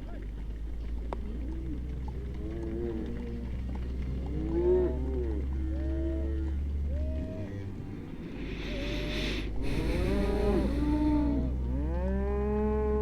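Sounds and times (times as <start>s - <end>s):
cattle mooing: 7.4s - 13.0s.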